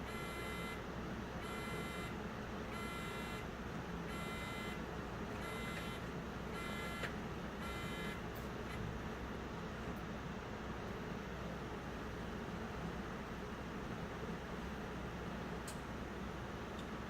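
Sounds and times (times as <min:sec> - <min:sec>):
alarm buzzer beeping: 0:00.1 - 0:00.8, 0:01.4 - 0:02.1, 0:02.7 - 0:03.4, 0:04.1 - 0:04.8, 0:05.4 - 0:06.0, 0:06.6 - 0:08.2.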